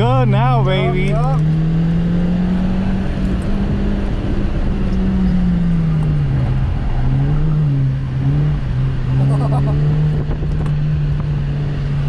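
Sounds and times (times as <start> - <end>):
car engine revving: 0.0 - 12.0
road and tire noise: 0.0 - 12.0.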